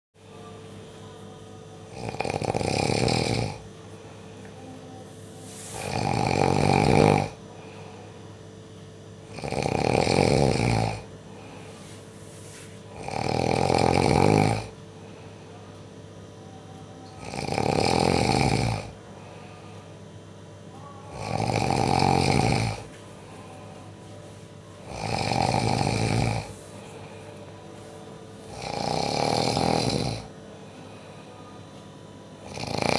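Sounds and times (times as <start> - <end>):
faint steady hum: 0.2 - 32.9
loud snoring: 1.9 - 3.7, 5.7 - 7.4, 9.2 - 11.1, 12.9 - 14.8, 17.2 - 19.0, 21.1 - 22.9, 24.8 - 26.6, 28.5 - 30.3, 32.4 - 32.9.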